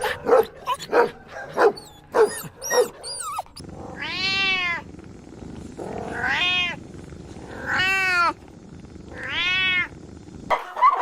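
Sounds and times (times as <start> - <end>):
cat meowing: 9.2 - 9.9.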